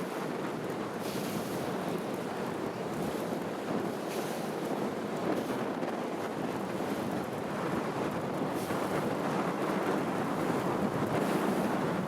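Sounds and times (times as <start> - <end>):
sea water and waves: 0.0 - 12.0
wind on microphone: 0.0 - 12.0.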